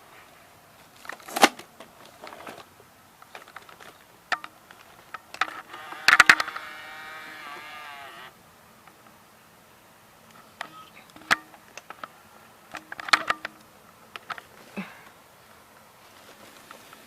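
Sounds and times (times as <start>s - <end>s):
camcorder plastic clicks and clunks: 3.3s - 6.6s, 10.3s - 12.1s.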